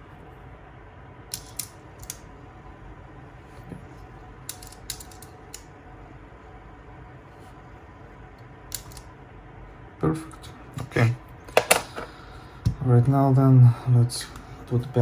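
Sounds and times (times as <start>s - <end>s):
faint steady hum: 0.0s - 15.0s
cassette mechanism clicks: 11.5s - 12.1s.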